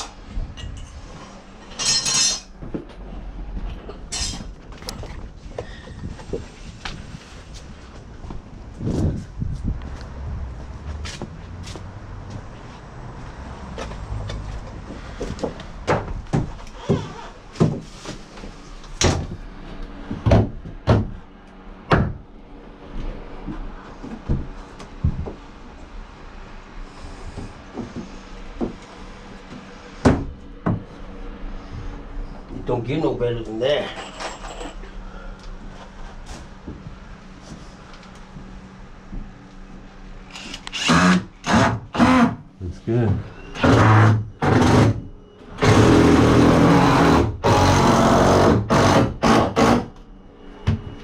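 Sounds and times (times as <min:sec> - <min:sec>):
low rumble: 0:02.9 - 0:16.6
hard objects knocking and thudding: 0:20.1 - 0:21.2.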